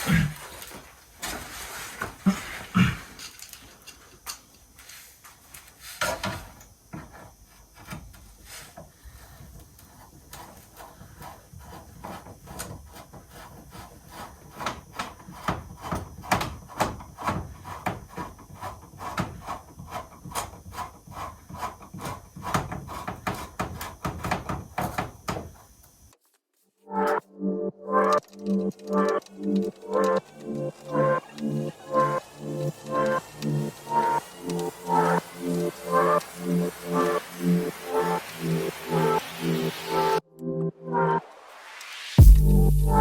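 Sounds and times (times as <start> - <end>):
knocks and scrapes: 0.0 - 3.8, 4.9 - 25.8.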